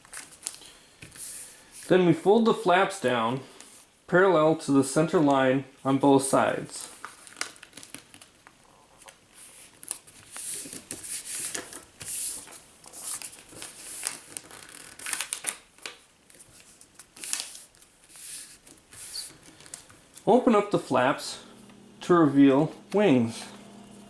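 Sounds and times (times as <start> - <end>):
paper rustling and folding: 0.0 - 1.9, 6.8 - 20.4.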